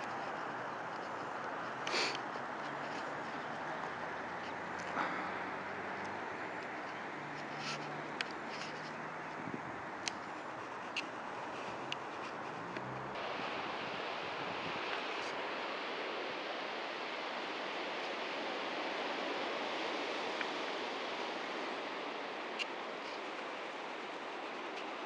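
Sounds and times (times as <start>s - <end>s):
faint ticks: 0.0s - 5.2s, 10.0s - 13.2s
water rushing: 0.0s - 25.0s.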